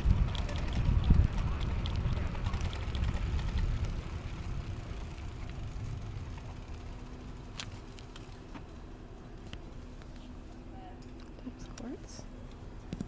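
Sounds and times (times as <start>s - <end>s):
wind rumble on microphone: 0.0s - 7.1s
bike tyre noise: 0.0s - 10.3s.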